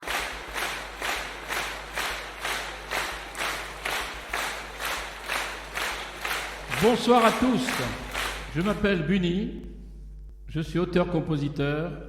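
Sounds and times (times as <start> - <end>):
audience clapping in unison: 0.0 - 8.9.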